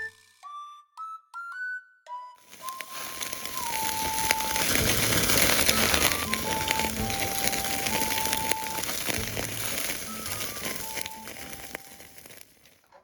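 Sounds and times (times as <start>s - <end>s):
crackling hiss: 2.4s - 12.8s.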